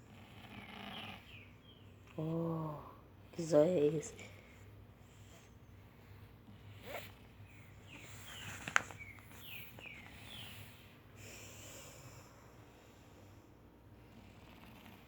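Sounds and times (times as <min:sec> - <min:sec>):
faint bird chirps: 0:06.9 - 0:10.9.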